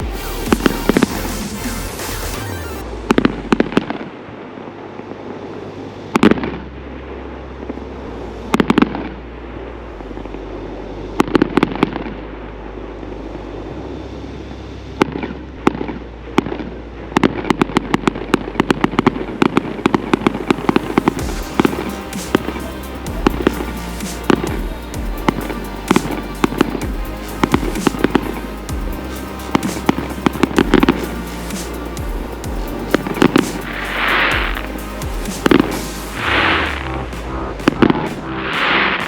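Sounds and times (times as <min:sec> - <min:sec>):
rapid firework crackling: 0:00.0 - 0:04.7, 0:17.2 - 0:39.0.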